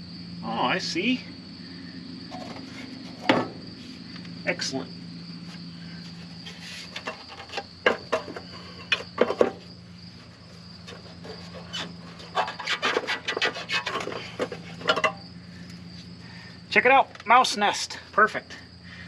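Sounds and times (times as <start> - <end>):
steady hum: 0.0 - 19.0
scraping and rustling: 2.3 - 4.0, 6.0 - 15.2.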